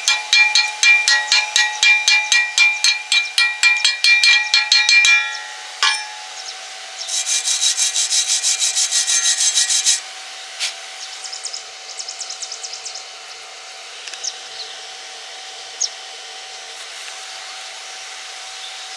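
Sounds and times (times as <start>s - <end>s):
hand tool scraping: 0.0s - 6.3s, 7.1s - 10.0s
steady hum: 0.0s - 10.0s.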